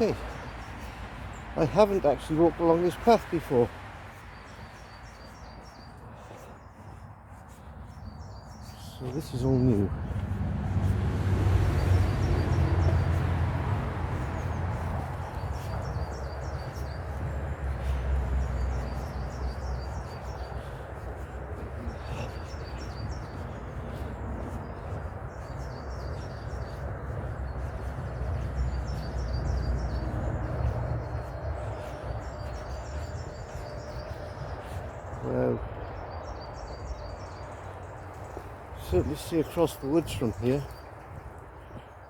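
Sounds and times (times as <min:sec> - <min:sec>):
small birds chirping: 0:00.0 - 0:42.0.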